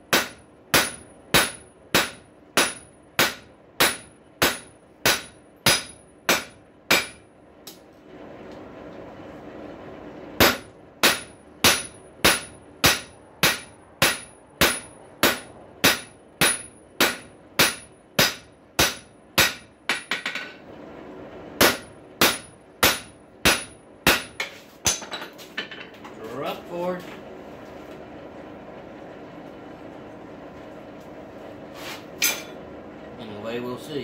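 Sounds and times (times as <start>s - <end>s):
hammer striking hot steel on anvil: 0.0s - 7.8s, 10.4s - 20.6s, 21.6s - 25.3s, 32.2s - 32.6s.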